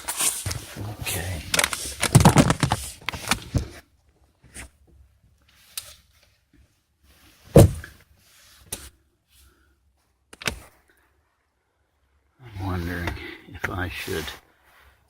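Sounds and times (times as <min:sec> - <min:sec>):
car door thump: 0:07.6 - 0:07.8.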